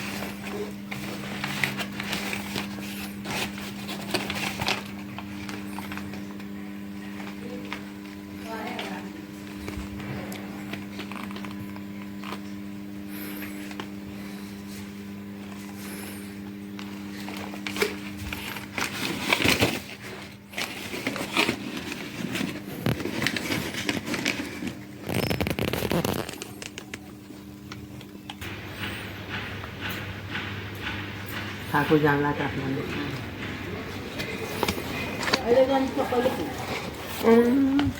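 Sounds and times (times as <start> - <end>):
microwave oven humming: 0.0 - 37.9
sharp crackles and clicks: 25.0 - 29.4.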